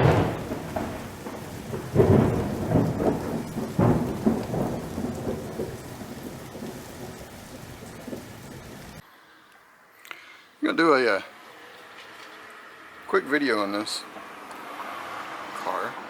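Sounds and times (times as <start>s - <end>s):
rain hissing: 0.0s - 9.0s
rolling thunder: 0.0s - 9.0s.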